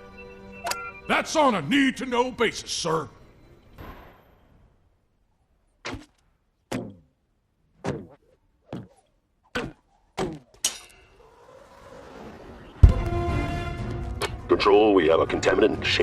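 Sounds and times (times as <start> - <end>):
faint rising noise: 11.1 - 14.0
heavy thunks: 12.8 - 14.0.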